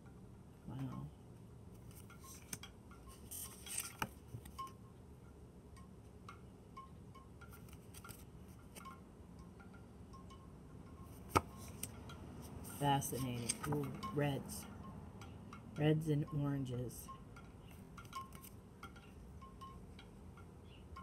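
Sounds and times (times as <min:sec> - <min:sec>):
cards tapping and rustling: 0:03.4 - 0:04.5, 0:11.2 - 0:11.9, 0:13.1 - 0:13.9.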